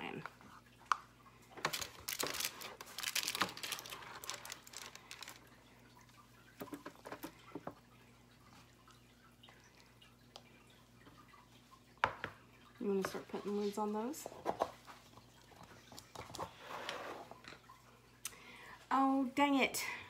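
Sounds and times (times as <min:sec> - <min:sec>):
plastic containers rustling and clattering: 0:01.5 - 0:05.5, 0:06.6 - 0:07.8.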